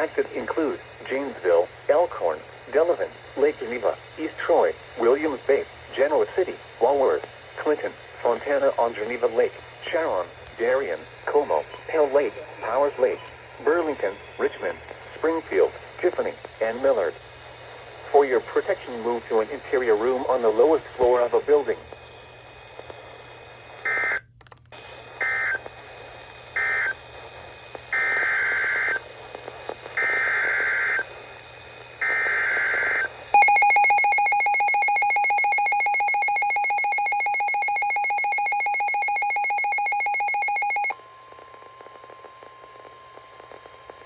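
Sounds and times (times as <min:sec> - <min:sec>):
digital data bursts: 0:33.4 - 0:41.0
steady electronic alert tone: 0:33.4 - 0:41.0.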